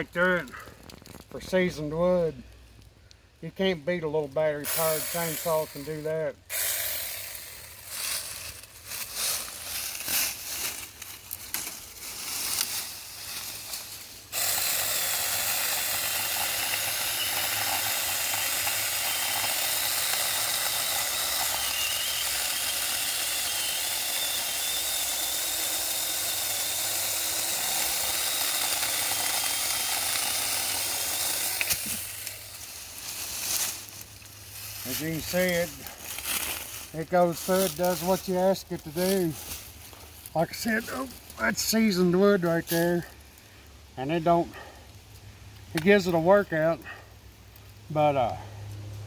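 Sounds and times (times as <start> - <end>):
chainsaw cutting through wood: 4.6 - 41.1
chainsaw click: 14.3 - 32.4.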